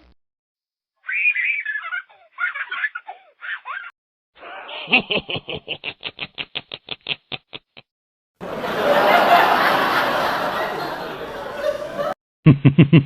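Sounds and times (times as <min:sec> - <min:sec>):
high-pitched giggling: 0:01.0 - 0:03.9
deep rhythmic laugh: 0:04.4 - 0:13.0.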